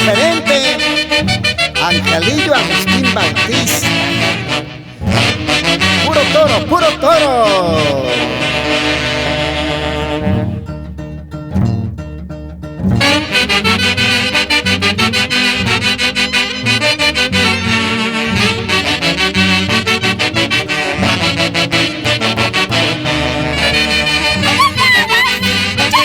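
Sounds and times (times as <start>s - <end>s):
saxophones and trumpets: 0.0s - 10.7s, 13.0s - 26.0s
bass line: 0.0s - 10.8s.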